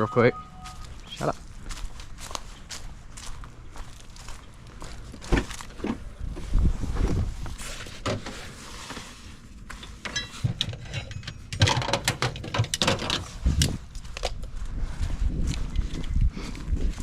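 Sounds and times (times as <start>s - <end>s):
footsteps: 0.0s - 8.0s.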